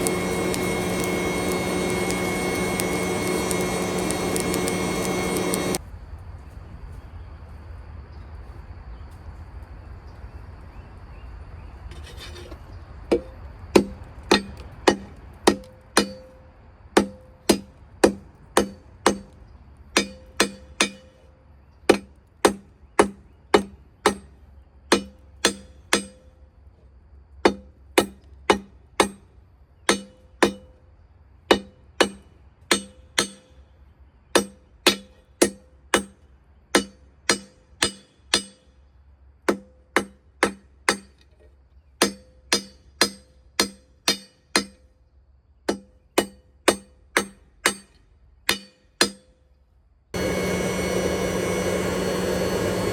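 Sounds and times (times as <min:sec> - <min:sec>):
hammer striking blade on anvil: 0:13.8 - 0:16.3, 0:20.0 - 0:21.2, 0:24.9 - 0:26.2, 0:29.9 - 0:30.6, 0:31.5 - 0:33.5, 0:36.8 - 0:38.6, 0:42.0 - 0:44.8, 0:45.7 - 0:49.3.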